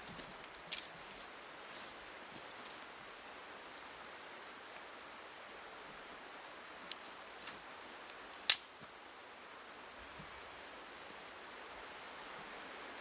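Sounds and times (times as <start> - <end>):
campfire hissing: 0.0 - 13.0
fire crackling pops: 6.9 - 8.9.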